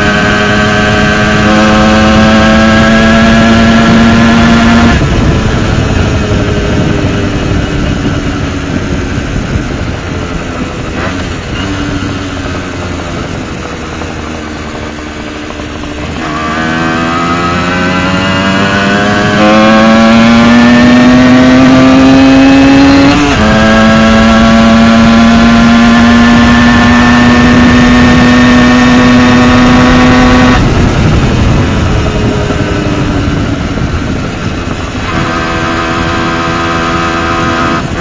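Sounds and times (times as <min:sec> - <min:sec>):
moped engine revving: 0:00.0 - 0:38.0.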